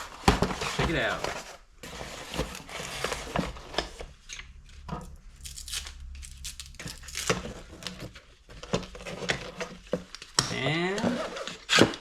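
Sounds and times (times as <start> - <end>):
packaging rustling: 0.0 - 4.1
cardboard box being torn open: 5.4 - 8.0.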